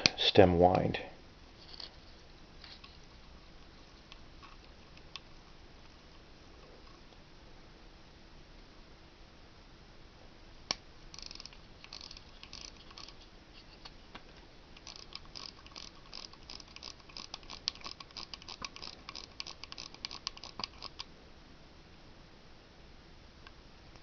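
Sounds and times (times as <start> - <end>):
watch winding ratchet clicks: 4.1 - 5.4, 11.1 - 13.2, 14.8 - 21.1
pocket watch click: 11.2 - 13.1, 14.8 - 21.1.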